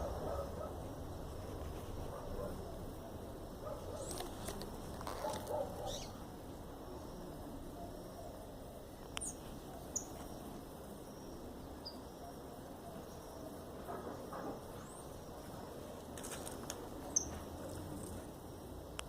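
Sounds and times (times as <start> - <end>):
high bird chirps: 5.8 - 6.2.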